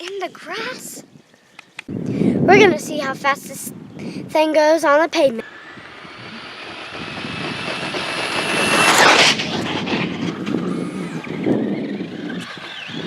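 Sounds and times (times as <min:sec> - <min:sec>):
drivetrain and tire noise: 0:05.4 - 0:11.0
rc car motor whine: 0:05.4 - 0:13.0.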